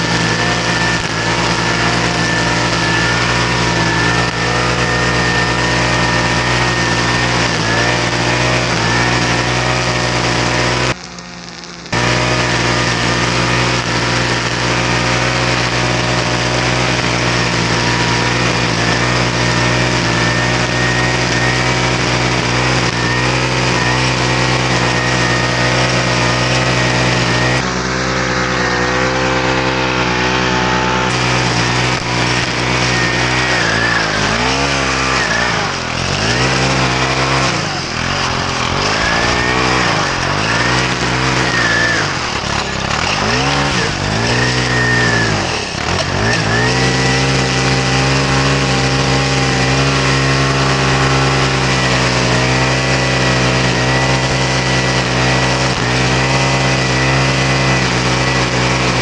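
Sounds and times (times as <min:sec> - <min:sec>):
small engine running: 0:00.0 - 0:59.0.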